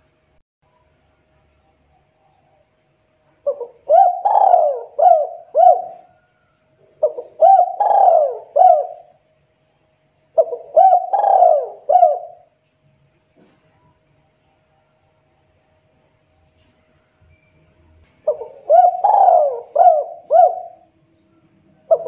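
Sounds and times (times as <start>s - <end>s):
dove cooing: 3.4s - 9.2s, 10.4s - 12.5s, 18.2s - 21.0s, 21.8s - 22.0s.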